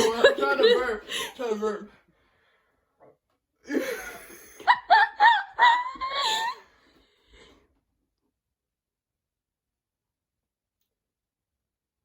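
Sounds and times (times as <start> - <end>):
person giggling: 0.0 - 1.4, 3.7 - 6.6.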